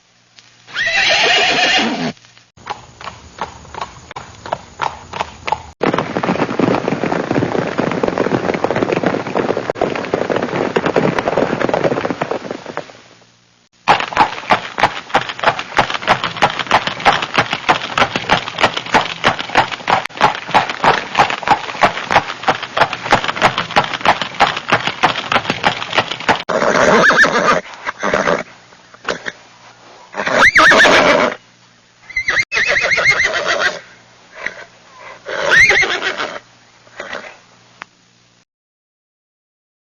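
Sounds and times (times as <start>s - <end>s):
hooves clip-clopping: 0.4s - 13.2s, 13.8s - 26.5s
horse whinny: 0.7s - 2.2s, 26.5s - 29.4s, 30.1s - 31.4s, 32.1s - 37.4s.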